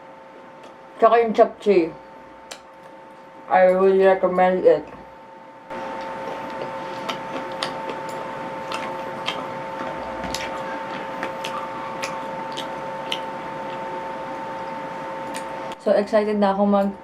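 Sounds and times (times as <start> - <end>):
steady background hum: 0.0 - 17.0
chewing crunchy fried food: 5.7 - 15.8.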